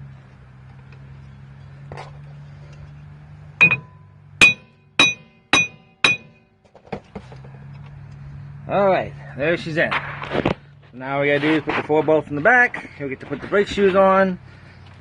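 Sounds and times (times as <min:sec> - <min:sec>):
hammer striking steel axle: 0:03.6 - 0:06.5.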